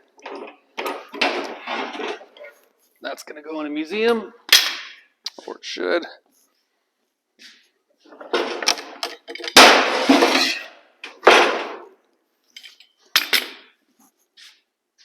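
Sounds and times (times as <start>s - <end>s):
metal clamps clanking: 8.3s - 11.7s.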